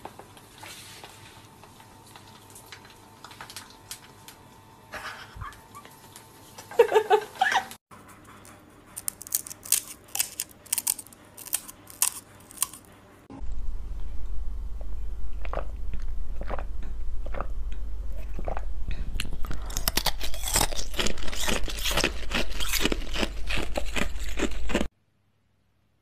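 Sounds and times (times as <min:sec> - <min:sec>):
steady low hum: 0:00.0 - 0:24.9
crisp crunching and crackling: 0:09.0 - 0:12.9, 0:19.2 - 0:24.9.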